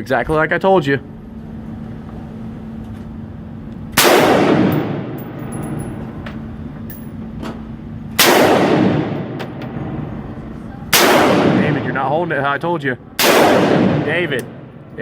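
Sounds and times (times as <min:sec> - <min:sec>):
rifle shots echoing: 0:04.0 - 0:05.7, 0:08.2 - 0:10.2, 0:10.9 - 0:12.4, 0:13.2 - 0:14.9.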